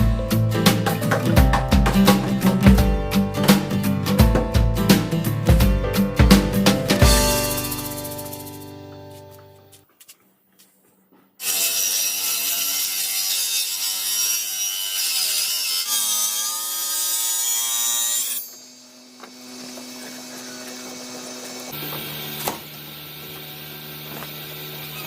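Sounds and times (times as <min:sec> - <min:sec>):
power saw cutting wood: 0:11.4 - 0:25.0.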